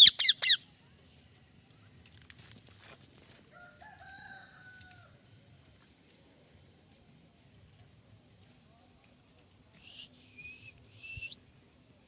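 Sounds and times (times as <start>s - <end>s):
parakeet screeching: 0.0s - 0.6s
rooster crowing faintly: 3.3s - 5.3s.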